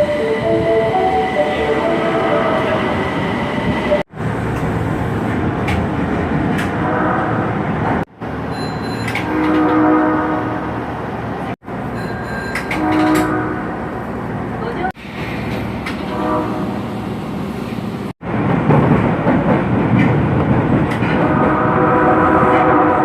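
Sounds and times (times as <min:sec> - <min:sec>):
train running noise: 0:00.0 - 0:23.0
train horn blast: 0:06.8 - 0:07.6, 0:09.2 - 0:10.7, 0:12.7 - 0:13.8, 0:16.0 - 0:16.9, 0:21.1 - 0:23.0.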